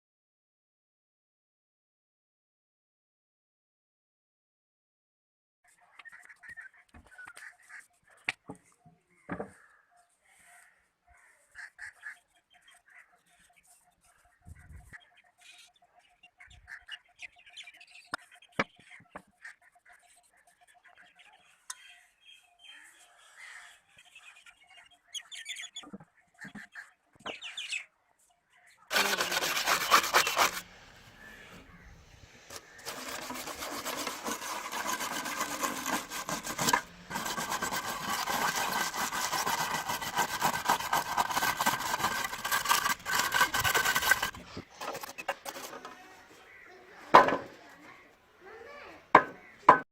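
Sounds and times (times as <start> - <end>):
abrasive scraping rusty metal: 28.9 - 46.0.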